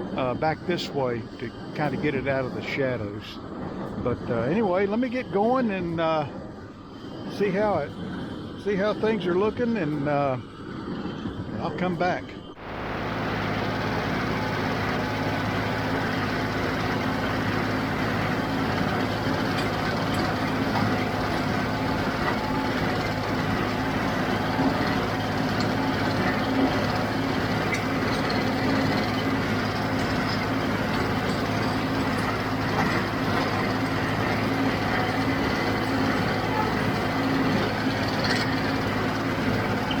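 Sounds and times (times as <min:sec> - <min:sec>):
tractor diesel engine running: 0:12.5 - 0:40.0.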